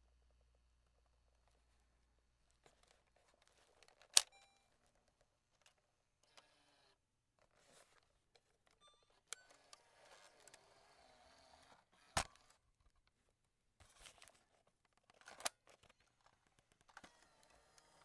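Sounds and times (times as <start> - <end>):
cassette eject mechanism clicks: 4.0 - 4.5
cassette handling rustle: 13.8 - 18.0.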